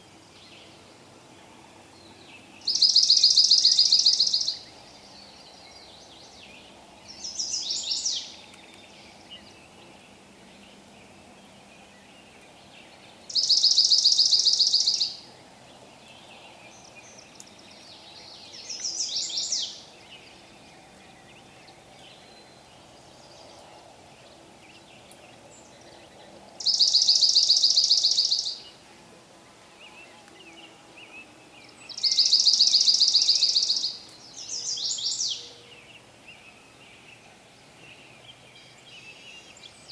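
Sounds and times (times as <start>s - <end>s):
songbird high trill: 2.6s - 4.7s, 13.3s - 15.2s, 26.6s - 28.7s, 31.9s - 35.5s.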